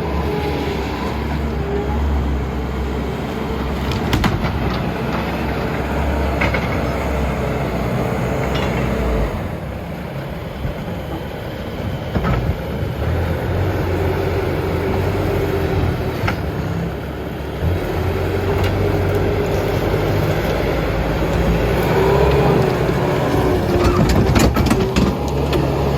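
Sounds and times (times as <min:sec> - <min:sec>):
diesel engine running: 0:00.0 - 0:25.9
metal clanks and knocks: 0:23.6 - 0:25.8.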